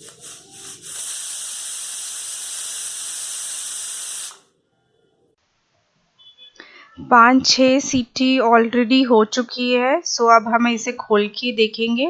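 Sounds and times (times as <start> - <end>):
pressure cooker whistle hissing: 0.0 - 4.5.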